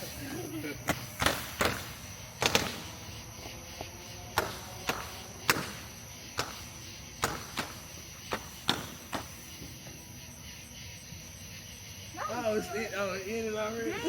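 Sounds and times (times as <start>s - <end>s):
fireworks banging: 0.0s - 10.1s.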